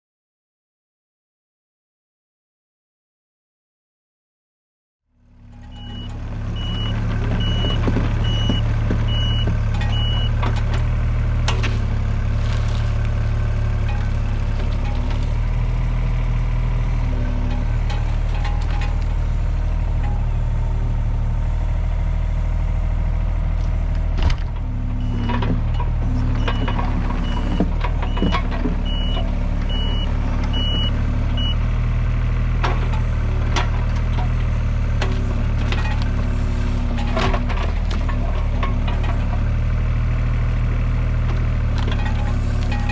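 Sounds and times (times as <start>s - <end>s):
heavy machine engine running: 5.2s - 42.9s
reversing alarm beeping: 5.7s - 10.4s, 26.4s - 31.6s.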